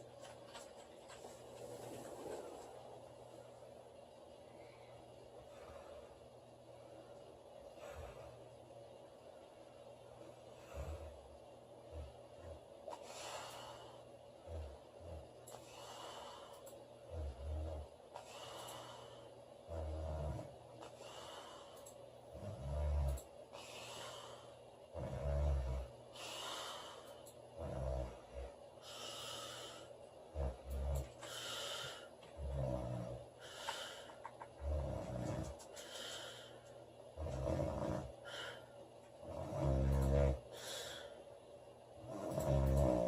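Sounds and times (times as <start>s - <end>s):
woman snoring: 11.9s - 21.4s, 22.3s - 27.0s, 27.6s - 34.0s, 34.6s - 36.5s, 37.2s - 41.1s, 42.0s - 43.0s
airy breathing: 25.8s - 36.8s, 40.0s - 41.3s.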